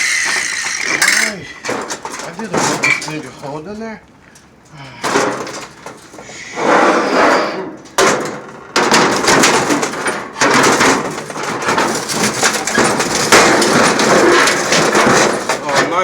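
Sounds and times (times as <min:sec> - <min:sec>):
metal grill parts knocking: 0:00.0 - 0:03.9, 0:07.2 - 0:16.0.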